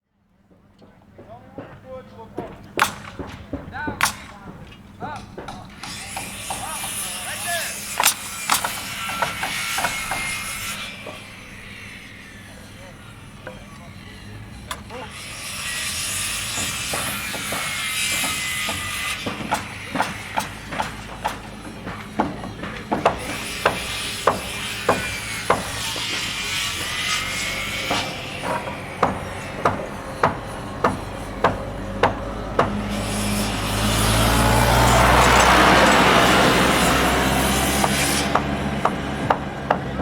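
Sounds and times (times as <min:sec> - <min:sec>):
construction site noise: 0:00.0 - 0:40.0
hammer striking: 0:00.8 - 0:12.3, 0:14.6 - 0:40.0
vehicle engine rumble: 0:27.2 - 0:40.0.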